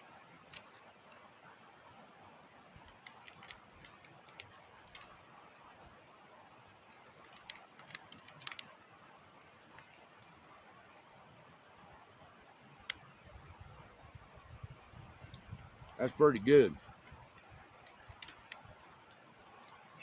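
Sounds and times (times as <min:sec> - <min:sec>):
faint sharp clicks: 0:12.8 - 0:13.1.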